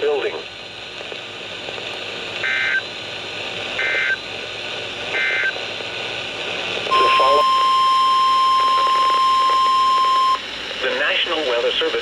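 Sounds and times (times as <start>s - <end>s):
radio receiver hiss: 0.2s - 12.0s
two-tone digital data bursts: 6.9s - 10.4s.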